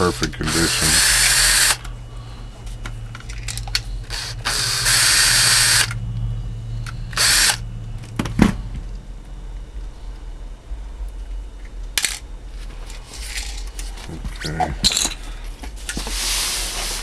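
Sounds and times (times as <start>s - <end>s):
electric screwdriver running: 0.0s - 1.8s, 4.1s - 6.0s, 7.2s - 7.6s.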